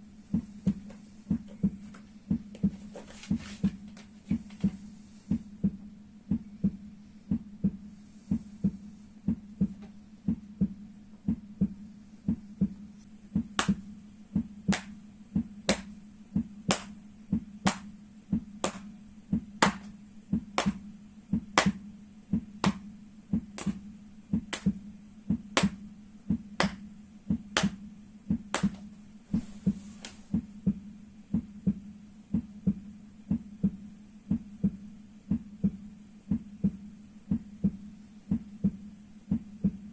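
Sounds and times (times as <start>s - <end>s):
heartbeat: 0.0s - 39.9s
slaps on feet: 13.4s - 13.8s, 14.7s - 15.0s, 15.7s - 15.9s, 16.7s - 17.0s, 17.6s - 17.9s, 18.6s - 18.9s, 19.6s - 20.8s, 21.4s - 21.8s, 22.6s - 22.8s, 23.4s - 23.8s, 24.4s - 25.8s, 26.6s - 28.9s.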